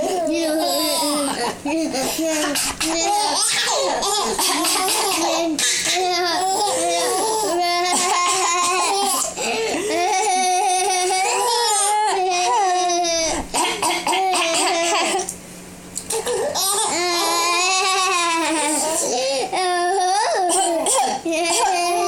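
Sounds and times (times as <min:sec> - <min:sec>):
baby laughing and squealing: 0:00.0 - 0:09.3
young child laughing: 0:00.8 - 0:06.0.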